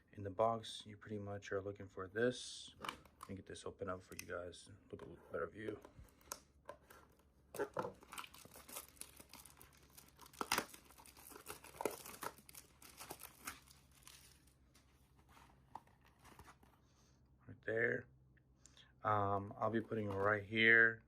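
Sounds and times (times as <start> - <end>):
packaging crinkling and tearing: 7.5 - 16.7.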